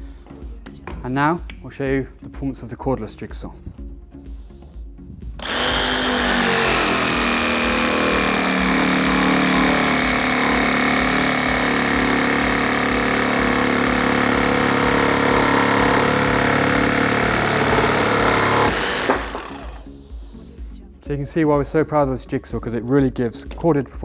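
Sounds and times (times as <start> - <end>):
jigsaw motor whining: 5.4 - 20.0.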